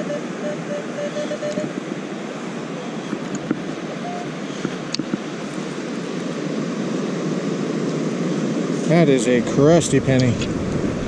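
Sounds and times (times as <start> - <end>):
metal detector tone: 0.0 - 1.8, 4.0 - 4.3
wind: 0.0 - 11.0.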